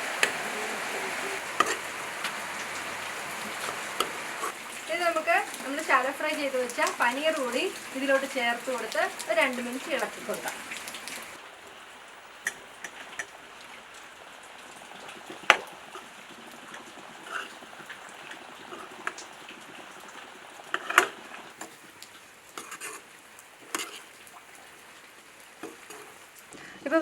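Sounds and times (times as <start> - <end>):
steady hiss: 0.0 - 16.3
spoon scraping and knocking pan: 1.6 - 1.8.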